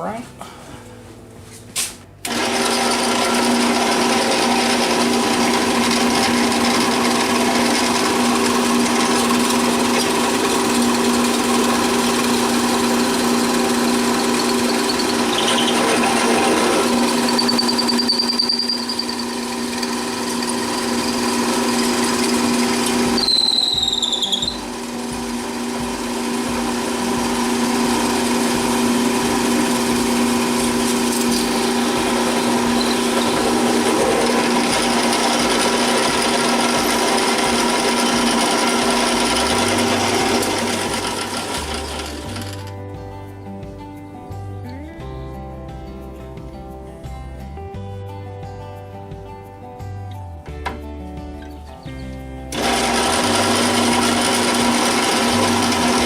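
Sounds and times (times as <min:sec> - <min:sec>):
power drill running: 0:02.2 - 0:42.7, 0:52.5 - 0:56.0
high squeal falling in pitch: 0:17.2 - 0:19.4, 0:23.2 - 0:24.6.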